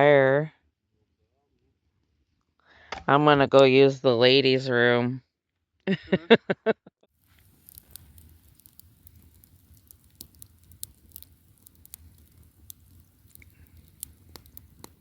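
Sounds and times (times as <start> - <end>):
campfire crackling and popping: 7.2 - 15.0.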